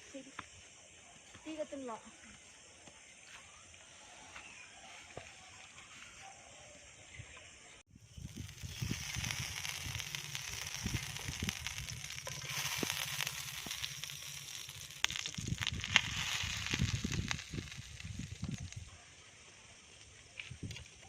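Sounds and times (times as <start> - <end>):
burning wood crackling: 7.9 - 19.0
fluttering low rumble: 8.0 - 18.9
food sizzling in a pan: 8.0 - 18.9
sharp pops: 8.2 - 18.9.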